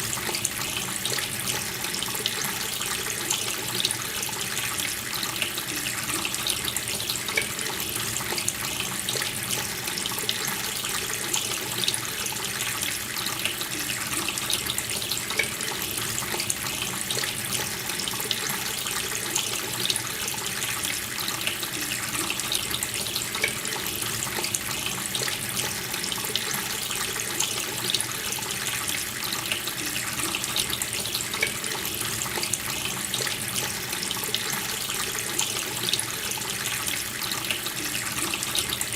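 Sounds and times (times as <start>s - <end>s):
water running from a tap: 0.0s - 38.9s.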